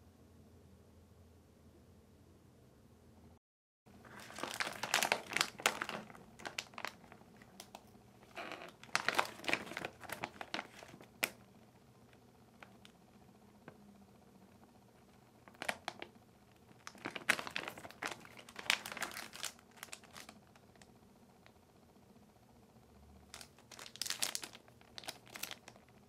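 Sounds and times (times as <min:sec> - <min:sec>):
plastic packaging crinkling: 0:04.0 - 0:11.5, 0:15.3 - 0:20.9, 0:23.3 - 0:26.0.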